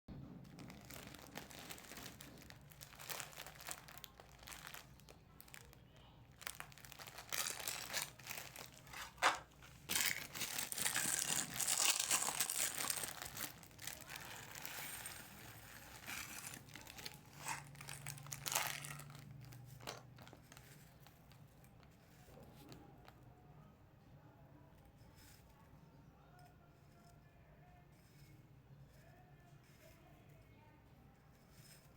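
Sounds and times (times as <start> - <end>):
snack packaging crinkling: 0.4 - 21.4.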